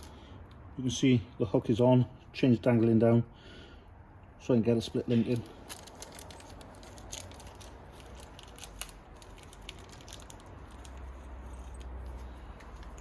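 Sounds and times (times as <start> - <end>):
bicycle chain clicking and jangling: 5.1 - 13.0.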